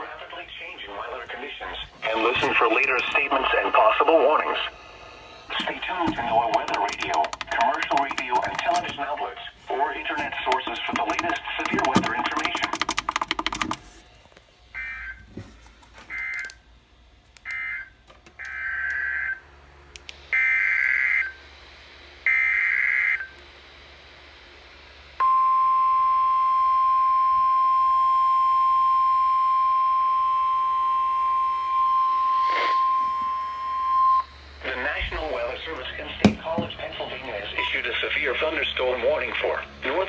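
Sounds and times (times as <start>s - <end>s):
single-pitch warning alarm tone: 25.2s - 34.6s.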